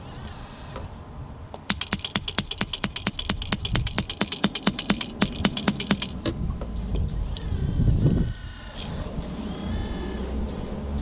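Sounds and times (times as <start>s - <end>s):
hammer attachment rattling: 1.7s - 7.2s.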